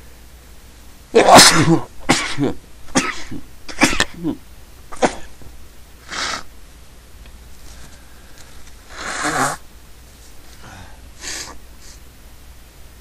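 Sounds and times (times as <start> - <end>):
person sneezing: 1.2 - 5.4, 6.0 - 6.5, 8.9 - 9.6, 10.6 - 12.0
short sniff: 6.0 - 6.5, 7.7 - 9.6, 11.2 - 12.1.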